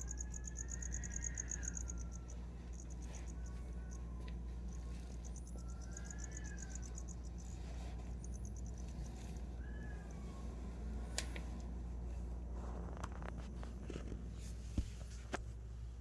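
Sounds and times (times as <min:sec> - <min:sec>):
cricket chirping: 0:00.0 - 0:10.3
soft gliding whistle-like calls: 0:00.0 - 0:10.8
steady low hum: 0:00.0 - 0:16.0.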